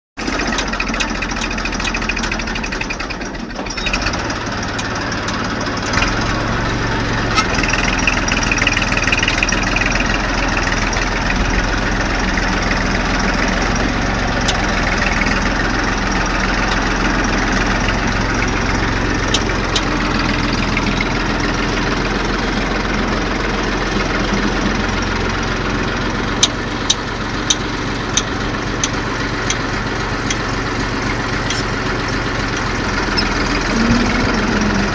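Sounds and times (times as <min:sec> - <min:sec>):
engine running steadily: 0:00.2 - 0:34.9
sharp clicks: 0:26.4 - 0:34.9.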